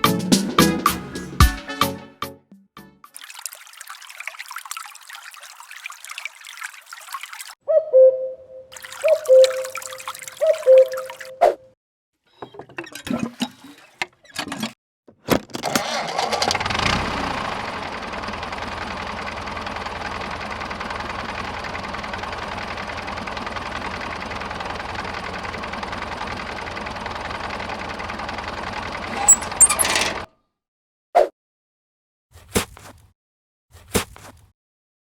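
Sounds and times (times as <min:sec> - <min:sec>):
small motor running: 0:15.8 - 0:30.3.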